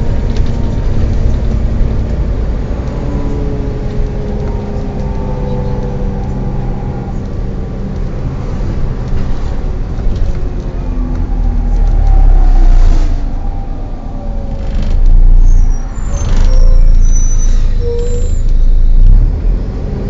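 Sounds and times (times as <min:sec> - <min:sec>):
bus engine rumble: 0:00.0 - 0:20.0.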